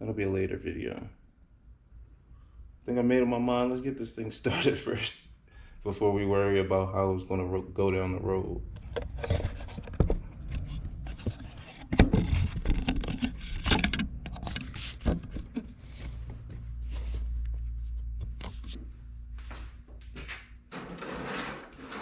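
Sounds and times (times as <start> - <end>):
steady low hum: 0.0 - 21.5
handling knocks and clicks: 8.8 - 16.6.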